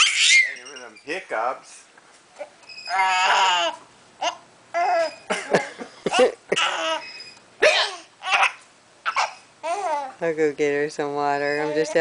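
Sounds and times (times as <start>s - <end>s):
child giggling: 4.8s - 7.0s
child hiccups: 7.6s - 10.0s.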